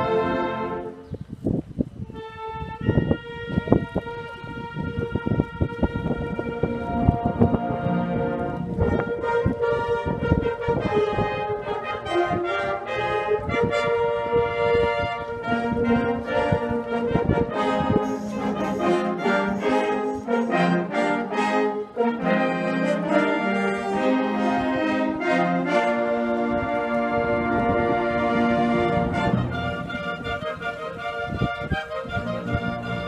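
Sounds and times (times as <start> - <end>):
marching band brass playing: 0.0 - 1.0, 2.1 - 33.0
low thumps: 27.2 - 31.7.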